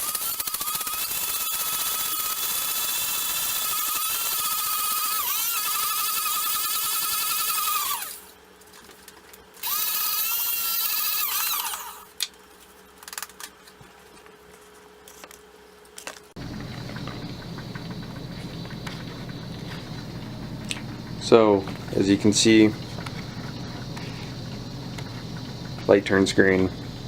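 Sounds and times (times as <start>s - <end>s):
coffee grinder whining: 0.0s - 8.4s, 9.6s - 12.2s, 16.4s - 27.0s
steady low hum: 1.9s - 27.0s.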